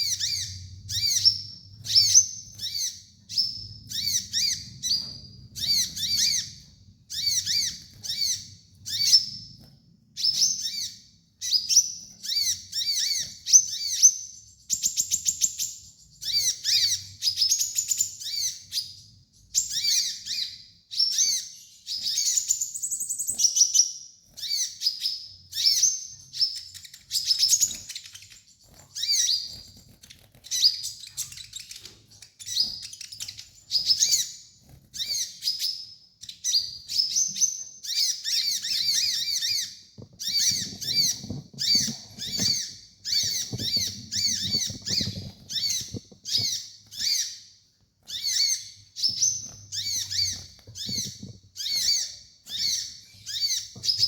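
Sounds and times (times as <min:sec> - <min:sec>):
bird singing whistled notes: 0:00.0 - 0:09.5
buzzy bird trill: 0:00.0 - 0:09.5, 0:19.6 - 0:54.0.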